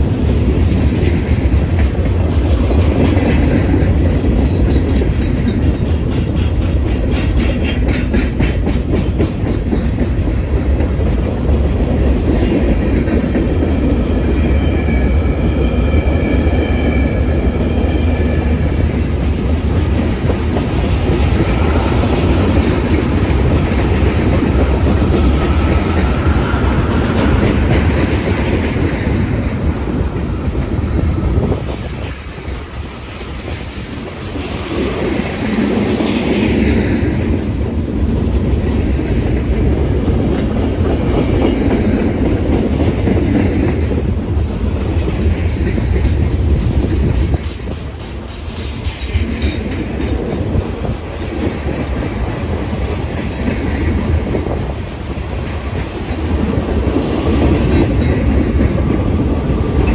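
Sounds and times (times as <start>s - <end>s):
train wheels clicking over rail joints: 0.0s - 59.9s
train wheels squealing: 12.4s - 20.0s, 20.8s - 33.3s, 47.7s - 51.4s.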